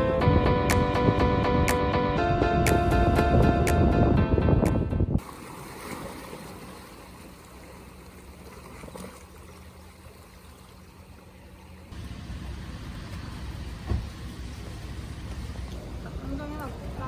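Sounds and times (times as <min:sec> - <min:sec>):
background music: 0:00.0 - 0:05.2.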